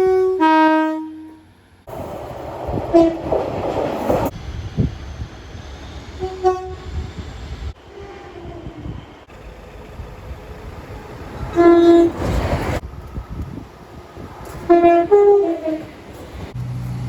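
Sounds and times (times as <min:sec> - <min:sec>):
train horn blasts: 0:00.0 - 0:01.5, 0:02.9 - 0:03.2, 0:06.2 - 0:07.1, 0:11.5 - 0:12.2, 0:14.6 - 0:15.9
low rumble of a train: 0:00.0 - 0:17.0.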